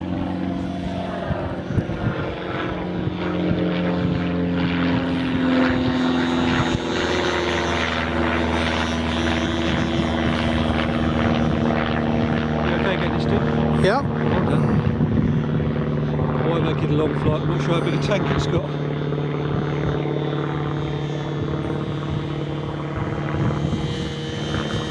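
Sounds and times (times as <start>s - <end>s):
model airplane engine running: 0.0s - 24.9s.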